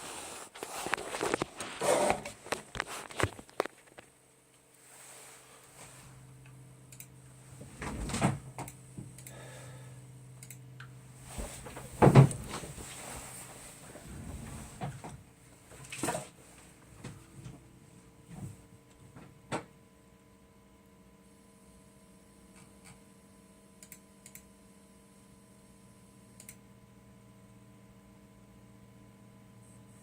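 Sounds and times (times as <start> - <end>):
steady low hum: 0.0 - 30.0
clunks and knocks: 11.5 - 12.8.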